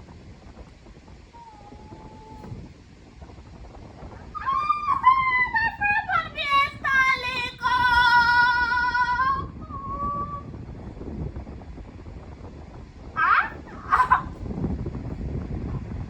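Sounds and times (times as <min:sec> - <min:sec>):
high-pitched wordless singing: 0:04.4 - 0:10.4.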